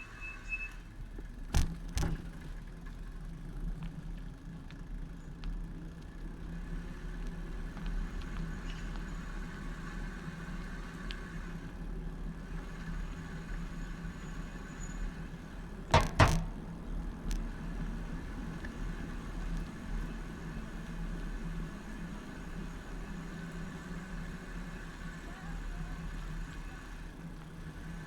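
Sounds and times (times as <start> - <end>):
street and riding noise: 0.0 - 28.0
sharp knocks: 15.9 - 16.7.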